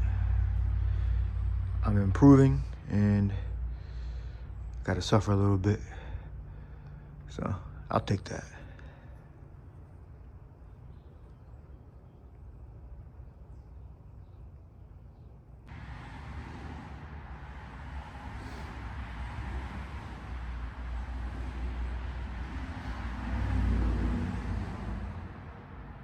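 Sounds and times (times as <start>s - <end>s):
road noise rumble: 0.0s - 26.0s
car engine running: 15.7s - 25.6s.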